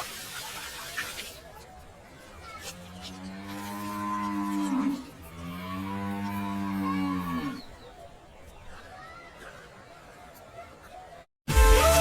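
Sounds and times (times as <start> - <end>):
cattle mooing: 2.7 - 7.8.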